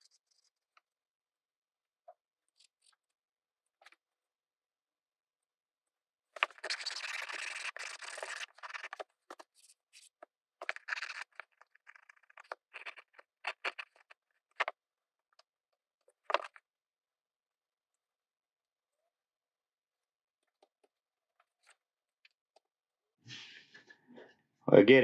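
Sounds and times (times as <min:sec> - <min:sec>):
hand file scraping plastic: 0:06.4 - 0:14.7.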